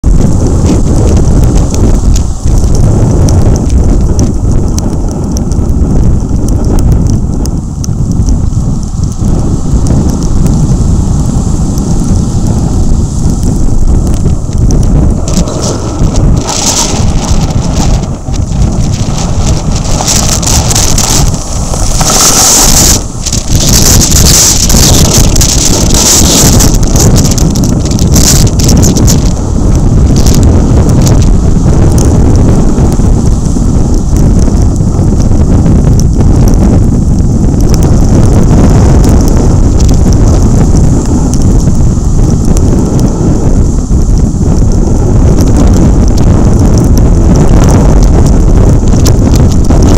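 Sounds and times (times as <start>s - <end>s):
surf breaking on shore: 0.0s - 49.9s
wind buffeting microphone: 0.0s - 49.9s.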